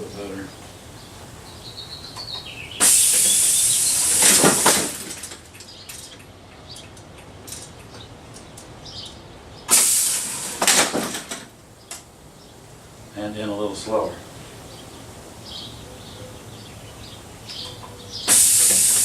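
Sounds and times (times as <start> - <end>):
loud hiss of compressed air: 2.7 - 5.3, 9.7 - 11.4, 18.2 - 19.0
linkage knocking and rattling: 4.2 - 8.7.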